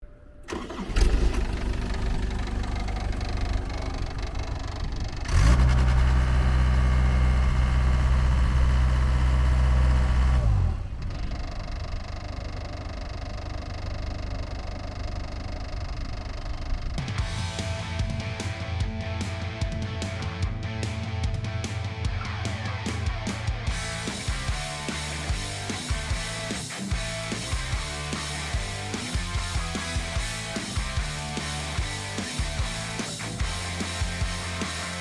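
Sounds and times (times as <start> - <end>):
diesel engine revving: 0.5 - 12.2.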